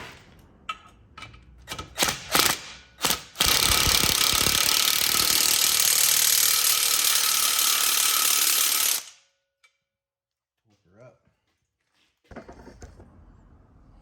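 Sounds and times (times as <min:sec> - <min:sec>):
ratchet wrench clicking: 0:03.4 - 0:09.2.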